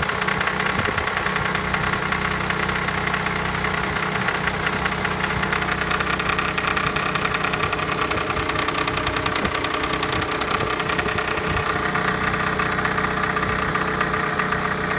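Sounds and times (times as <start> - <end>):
diesel engine running: 0.0 - 14.9
fast even ticking: 5.6 - 12.3.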